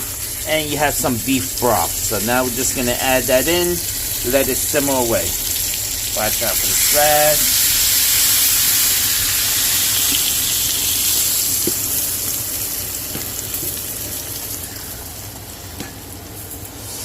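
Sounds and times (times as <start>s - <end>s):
liquid hissing in a hot pan: 0.0s - 15.6s, 16.4s - 17.0s.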